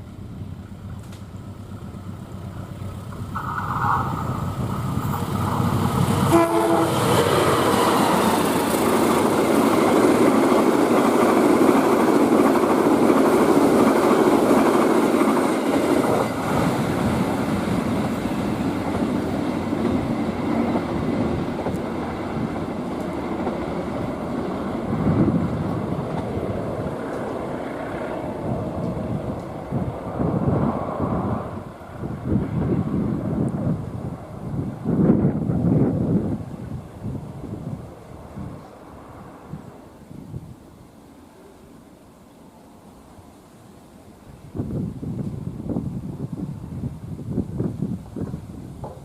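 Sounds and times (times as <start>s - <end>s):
train carriages rushing and clattering: 2.8s - 31.3s
train horn blasts: 6.2s - 7.1s.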